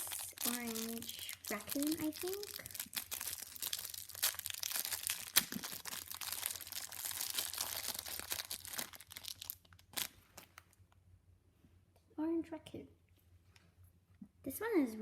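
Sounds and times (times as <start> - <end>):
plastic wrapper crinkling and tearing: 0.0 - 10.9.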